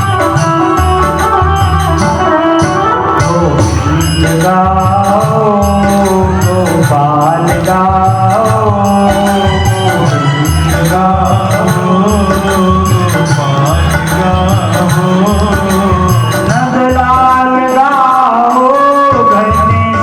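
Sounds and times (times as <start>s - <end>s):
devotional singing with accompaniment: 0.0s - 20.0s.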